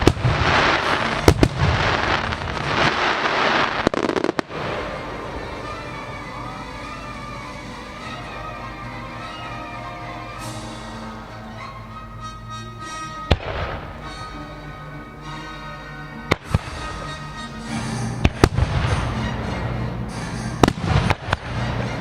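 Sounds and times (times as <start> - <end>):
fireworks bangs and crackle: 0.0 - 7.0, 16.3 - 17.1, 17.7 - 19.5, 20.2 - 22.0.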